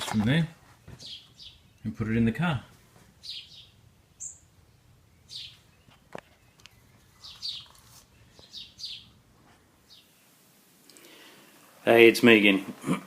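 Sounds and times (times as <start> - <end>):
high bird chirps: 3.2 - 4.5, 5.1 - 9.2.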